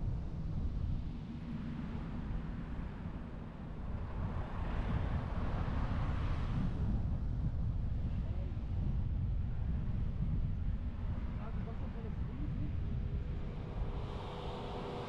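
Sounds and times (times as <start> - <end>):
car road and wind noise: 0.0 - 15.0
loud air rush: 13.6 - 15.0.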